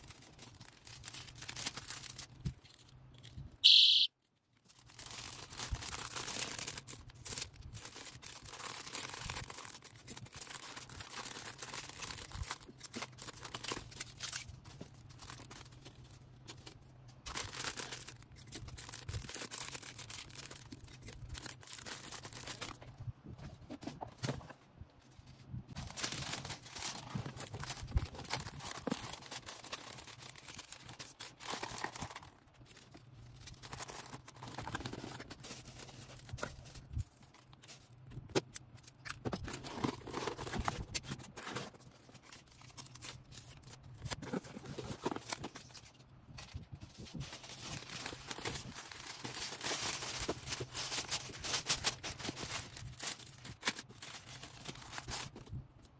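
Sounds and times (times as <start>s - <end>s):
packaging crinkling and rustling: 0.0s - 3.6s, 4.3s - 55.9s.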